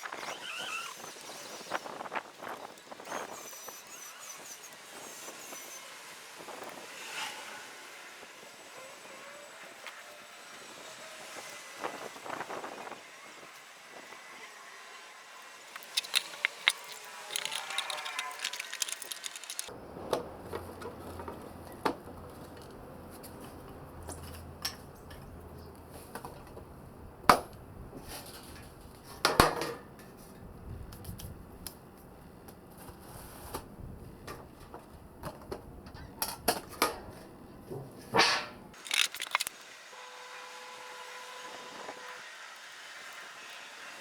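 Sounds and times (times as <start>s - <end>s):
steel rods clinking and knocking: 15.8s - 19.7s, 38.8s - 39.5s.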